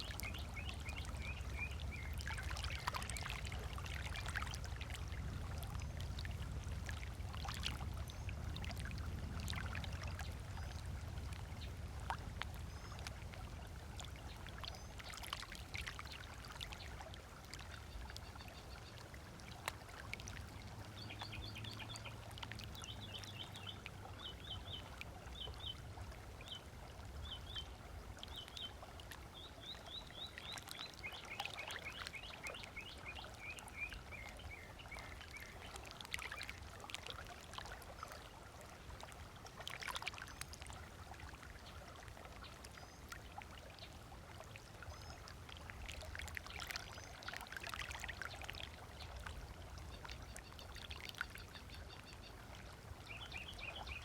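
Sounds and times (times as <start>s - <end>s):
small waves lapping on beach: 0.0s - 54.0s.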